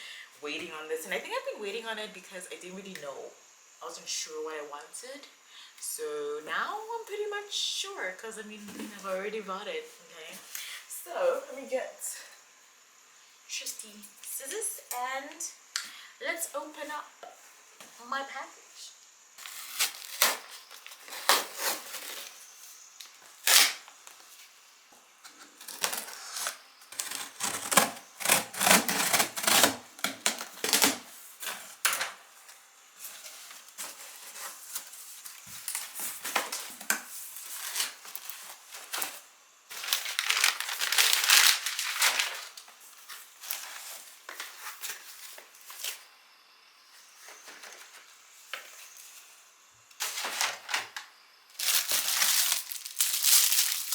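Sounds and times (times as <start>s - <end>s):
packaging rustling: 19.4s - 24.3s, 25.5s - 32.2s, 33.0s - 46.0s, 51.6s - 53.9s
cardboard and plastic packaging crinkling: 19.4s - 24.5s, 25.3s - 46.0s, 50.0s - 51.0s, 51.6s - 53.9s
scissors cutting tape: 25.6s - 31.0s.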